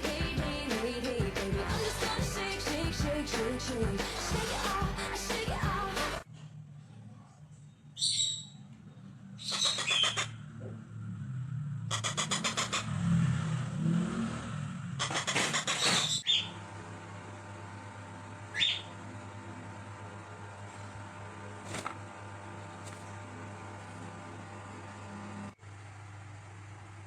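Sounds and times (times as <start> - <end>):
parrot squawking: 9.4 - 10.4, 11.9 - 13.0, 15.0 - 16.5, 18.5 - 18.9.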